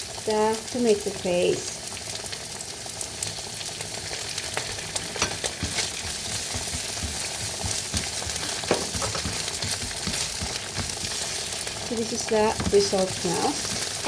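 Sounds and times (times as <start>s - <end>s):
vegetables sizzling in oil: 0.0s - 14.0s
utensil clicking against pan: 4.6s - 14.0s.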